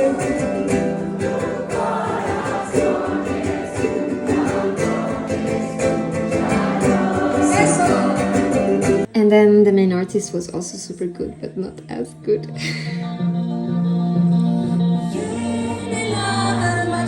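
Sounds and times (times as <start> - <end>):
crowd singing along: 0.0 - 9.1, 14.3 - 17.0
live band playing: 0.0 - 9.1.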